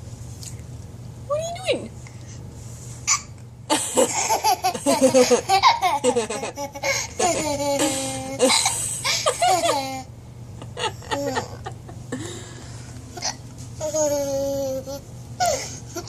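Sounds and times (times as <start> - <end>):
baby laughing: 11.0 - 11.8.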